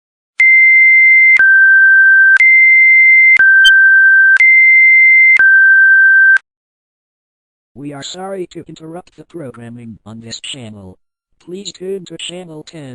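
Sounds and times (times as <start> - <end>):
two-tone electronic alert beep: 3.3 - 4.6.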